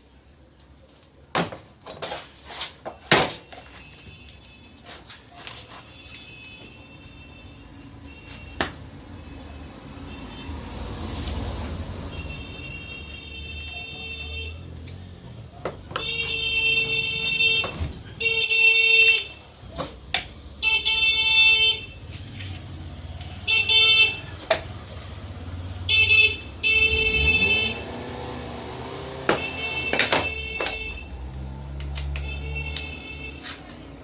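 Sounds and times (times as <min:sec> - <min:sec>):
pitched honking tones: 0:25.8 - 0:33.6.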